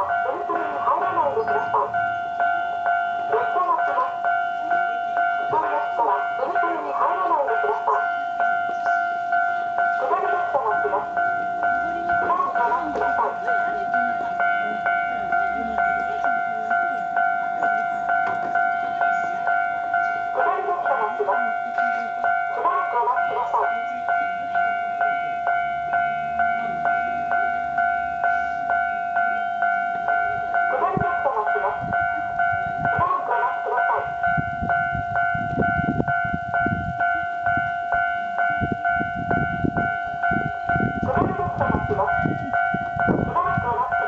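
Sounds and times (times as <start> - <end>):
recorded voice announcement: 0.0 - 2.1, 3.2 - 4.3, 5.3 - 24.4, 30.6 - 34.4, 40.7 - 44.0
level crossing warning bell: 0.0 - 44.0.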